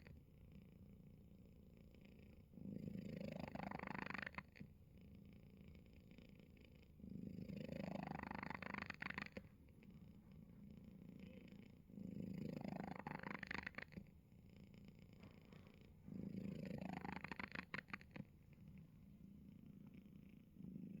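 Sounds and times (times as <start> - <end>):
cat snoring: 0.0 - 21.0.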